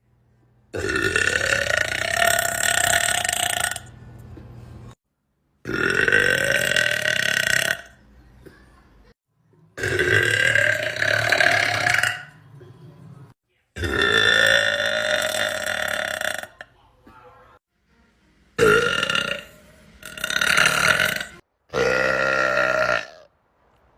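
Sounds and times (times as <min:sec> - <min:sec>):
girls belching: 0:09.8 - 0:12.4, 0:13.8 - 0:16.6, 0:18.6 - 0:23.3.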